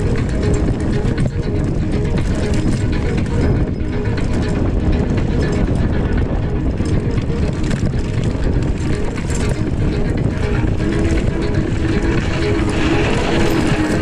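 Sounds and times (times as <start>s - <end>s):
mountain bike rattling over rough ground: 0.0s - 14.0s
wind rushing over microphone: 0.0s - 14.0s.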